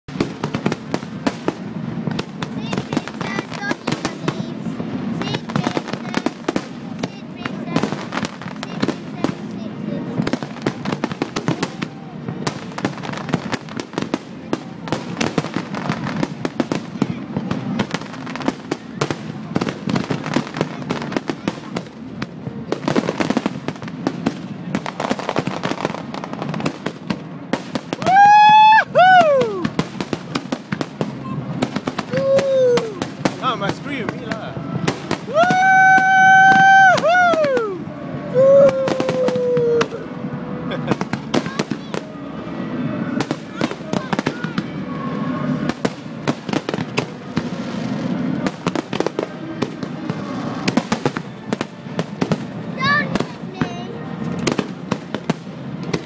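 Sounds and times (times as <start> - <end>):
fireworks cracks and pops: 0.1 - 37.8, 40.7 - 42.1.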